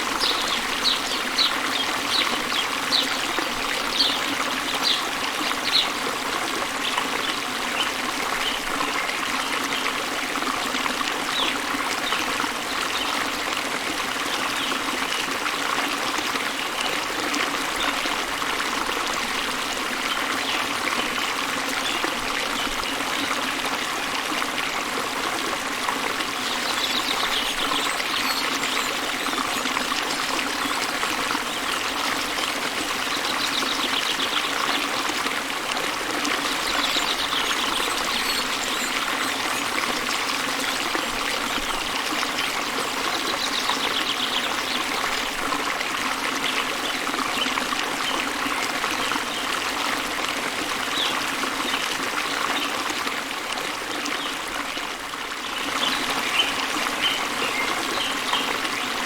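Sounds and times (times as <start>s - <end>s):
waterfall rushing water: 0.0s - 59.0s.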